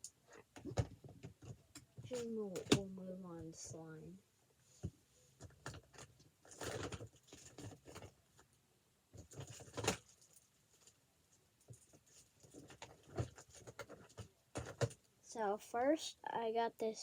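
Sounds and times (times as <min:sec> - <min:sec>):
rustling: 0:04.6 - 0:15.1.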